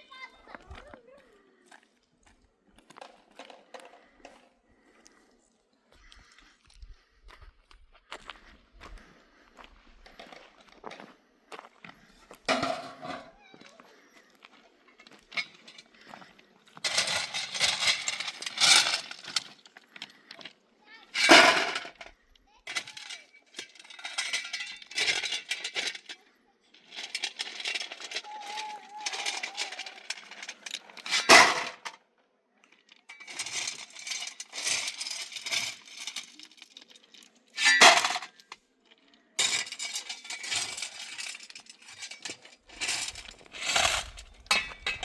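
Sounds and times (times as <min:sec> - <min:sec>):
hard objects scraping and clinking: 0:15.1 - 0:20.5, 0:22.7 - 0:32.0, 0:33.0 - 0:38.6, 0:39.4 - 0:45.0.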